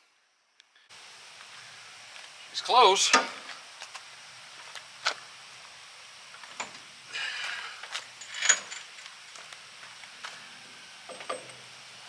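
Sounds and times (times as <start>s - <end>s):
metal parts clicking and knocking: 11.1s - 11.7s.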